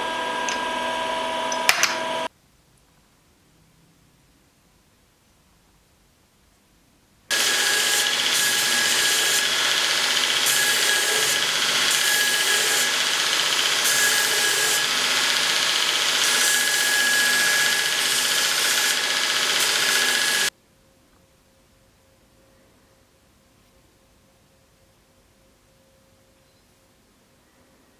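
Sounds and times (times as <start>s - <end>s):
power tool running with whine: 0.0s - 2.3s, 7.3s - 20.5s.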